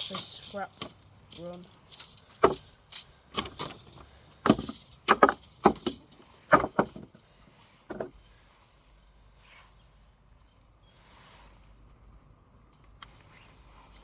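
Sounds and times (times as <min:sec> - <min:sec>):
plastic hairdryer being smashed: 0:04.5 - 0:07.0.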